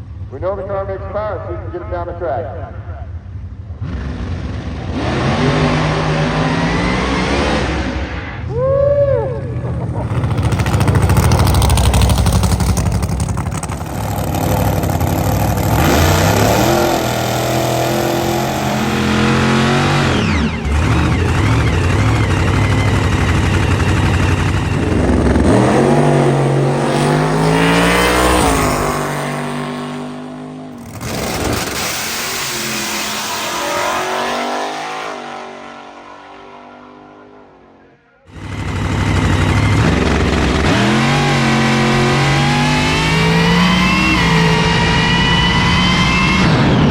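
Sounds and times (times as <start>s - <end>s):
drag car engine at full throttle: 3.1s - 8.5s, 9.3s - 46.9s.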